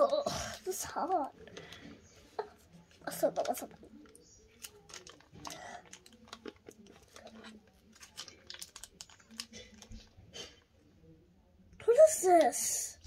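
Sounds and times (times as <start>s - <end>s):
toy packaging crinkling and clicking: 0.0s - 1.9s, 3.1s - 10.2s.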